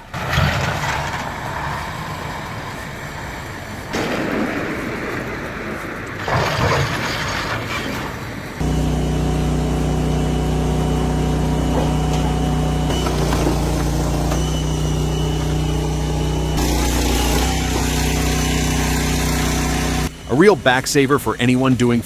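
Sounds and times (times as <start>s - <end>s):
engine running steadily: 8.5s - 22.0s.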